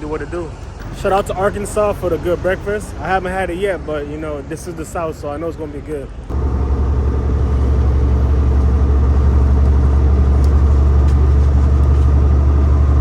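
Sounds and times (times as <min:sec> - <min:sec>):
truck diesel engine humming: 0:06.3 - 0:13.0.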